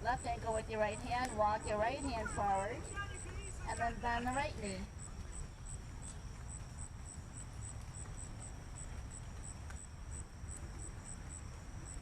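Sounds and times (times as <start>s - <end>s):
cricket chirping: 0.0s - 12.0s.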